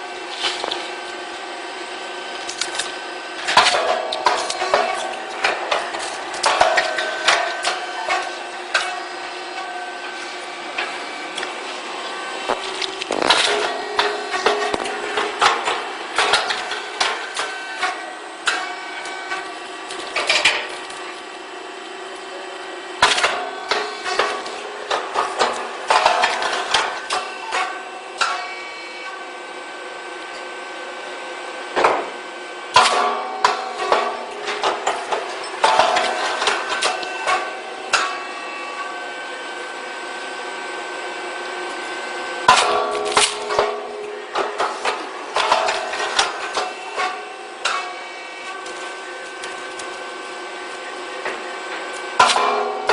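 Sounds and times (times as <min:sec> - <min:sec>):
machine hum: 0:00.0 - 0:52.9
sharp metallic bangs: 0:52.2 - 0:52.9.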